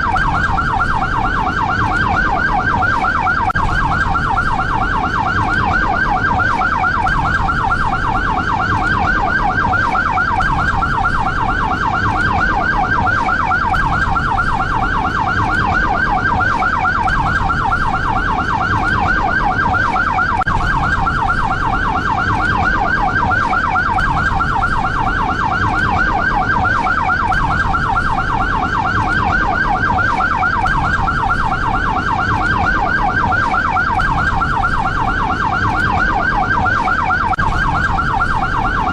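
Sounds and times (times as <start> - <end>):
ambulance siren yelp: 0.0 - 38.9.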